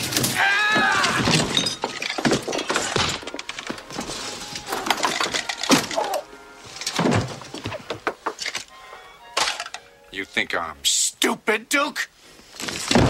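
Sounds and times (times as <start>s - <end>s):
glass shattering: 0.0s - 3.6s
crashes and thuds: 6.9s - 8.0s, 12.6s - 13.0s.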